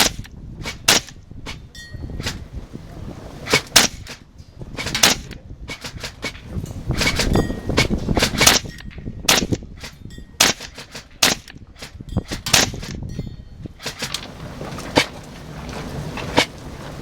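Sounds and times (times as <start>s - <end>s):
airsoft rifle shots: 0.0s - 2.4s, 3.4s - 13.1s, 13.8s - 14.3s
wind rumble on microphone: 0.0s - 17.0s.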